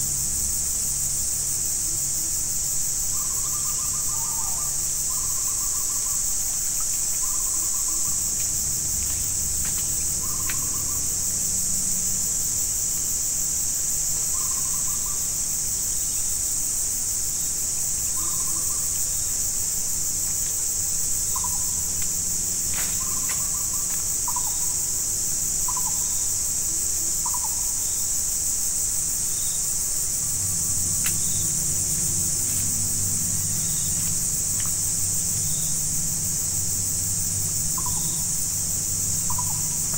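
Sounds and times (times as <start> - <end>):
insect chorus: 0.0 - 39.9
low hum: 29.0 - 39.9.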